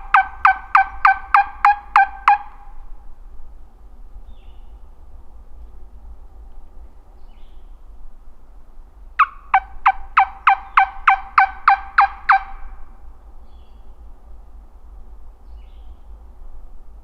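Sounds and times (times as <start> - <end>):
turkey yelping: 0.0 - 2.6, 9.2 - 12.8.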